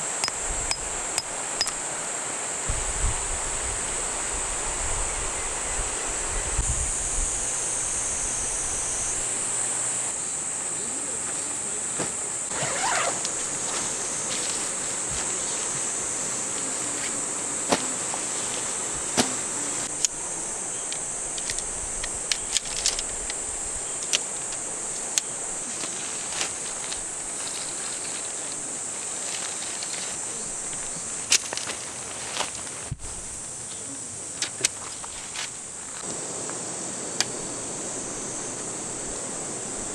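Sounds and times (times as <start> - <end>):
insect drone: 0.0 - 39.9
stream rushing: 36.0 - 39.9.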